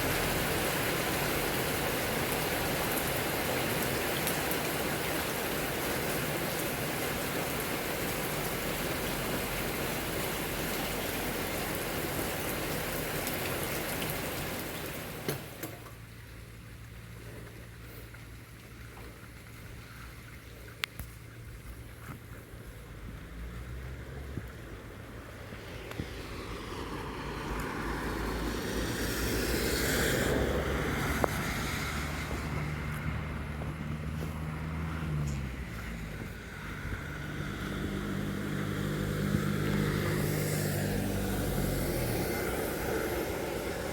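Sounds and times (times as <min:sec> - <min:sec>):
rain falling steadily: 0:00.0 - 0:43.9
strong wind gusting: 0:39.8 - 0:43.9.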